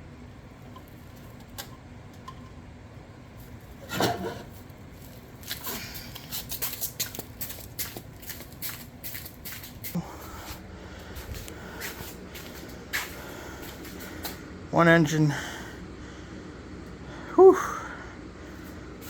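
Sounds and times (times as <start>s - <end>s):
person straining vocally: 17.3s - 18.0s.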